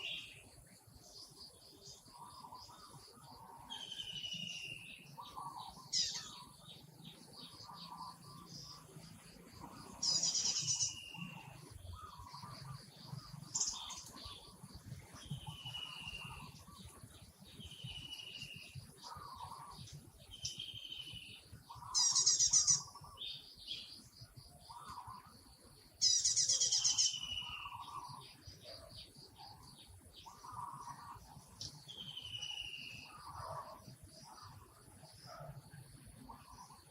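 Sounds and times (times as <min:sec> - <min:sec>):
high chirping trills: 0:17.6 - 0:24.0, 0:26.0 - 0:28.5.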